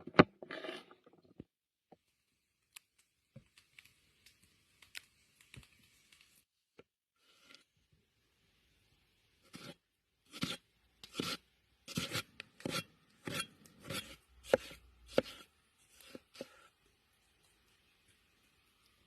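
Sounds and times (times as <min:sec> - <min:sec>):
knife chopping food: 0:10.3 - 0:15.5.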